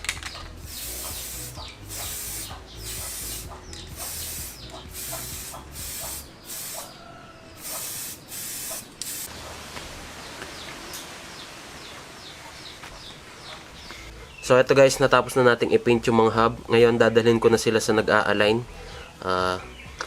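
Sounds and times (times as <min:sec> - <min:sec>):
spray paint hissing: 0:00.6 - 0:07.0, 0:07.6 - 0:09.3.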